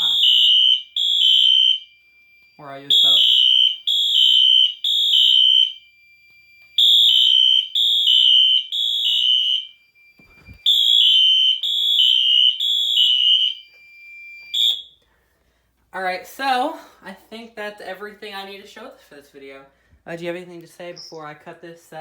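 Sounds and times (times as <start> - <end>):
fire alarm horn pulses: 0.0 - 14.9
faint steady high tone: 9.7 - 10.7.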